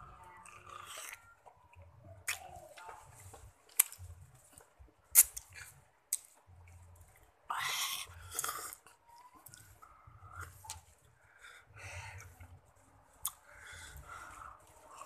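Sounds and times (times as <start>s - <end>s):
wet chewing of lemon: 0.3s - 10.9s.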